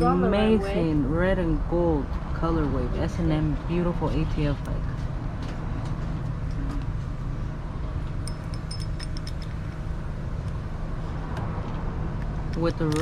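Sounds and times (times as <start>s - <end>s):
low background rumble: 0.0s - 13.0s
light metallic clinks: 8.2s - 9.8s.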